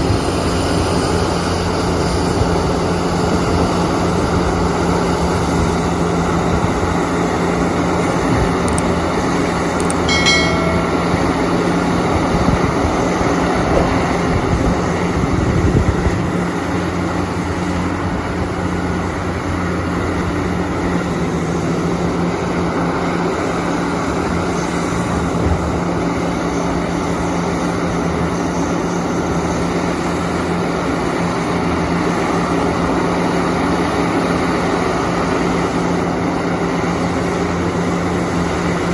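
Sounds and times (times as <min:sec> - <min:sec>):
diesel engine running: 0:00.0 - 0:10.3, 0:10.9 - 0:38.9
short high-pitched tone: 0:09.9 - 0:11.6.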